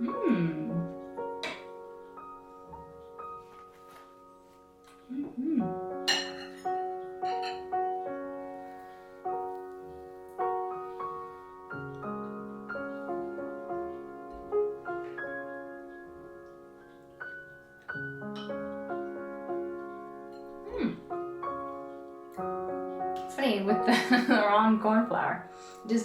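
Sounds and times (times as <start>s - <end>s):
slow piano music: 0.0s - 26.0s.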